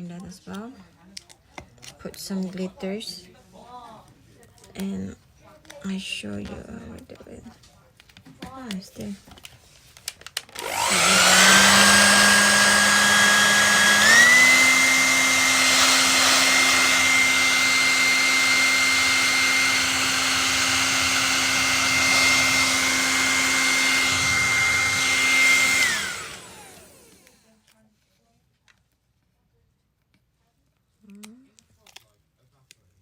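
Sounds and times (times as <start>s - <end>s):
hair dryer blowing: 10.5s - 27.4s.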